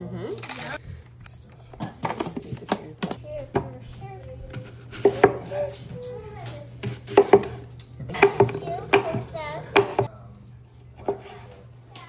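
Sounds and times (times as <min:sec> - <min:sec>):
sharp knocks and clicks: 0:06.8 - 0:10.1.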